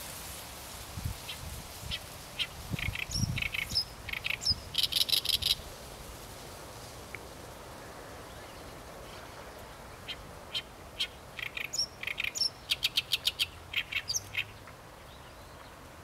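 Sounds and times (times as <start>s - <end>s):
warbler singing: 2.4s - 5.6s, 8.3s - 15.7s.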